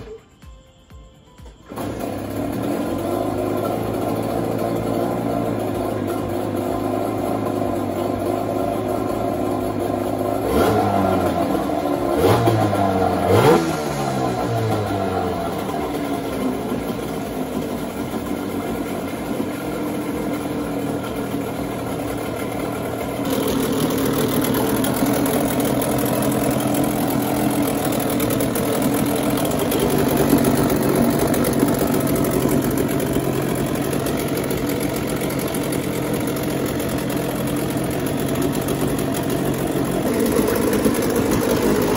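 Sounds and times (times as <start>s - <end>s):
outboard engine revving: 1.7s - 41.9s.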